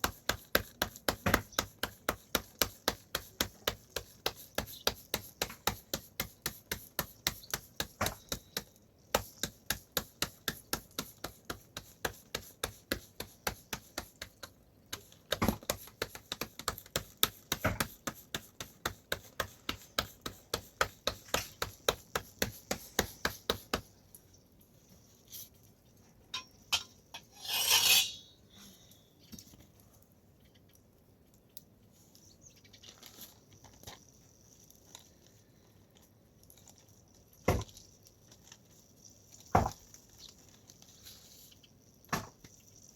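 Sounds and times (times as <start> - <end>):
scraping clatter: 26.4 - 28.3.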